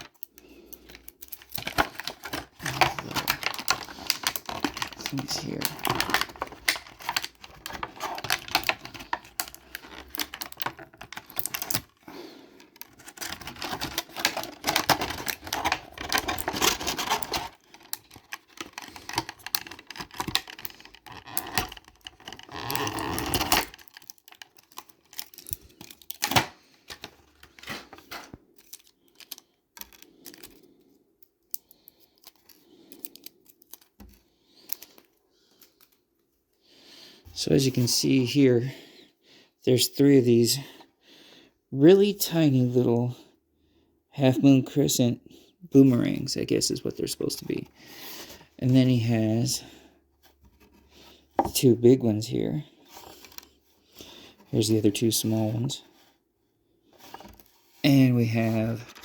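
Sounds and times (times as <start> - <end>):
plastic packaging crackling: 0.0 - 30.5.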